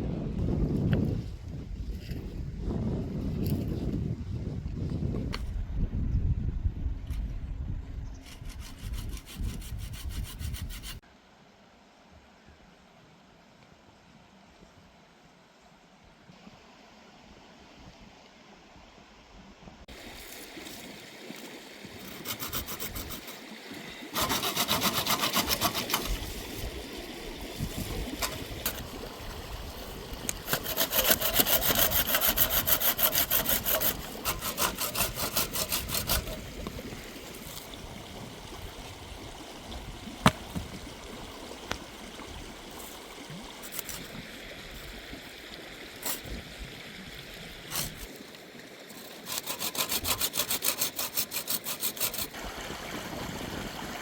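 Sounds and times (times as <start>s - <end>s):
hand saw cutting wood: 8.2s - 11.0s, 22.0s - 23.4s, 24.2s - 26.4s, 28.2s - 28.8s, 30.2s - 36.7s, 47.7s - 48.1s, 48.9s - 52.4s.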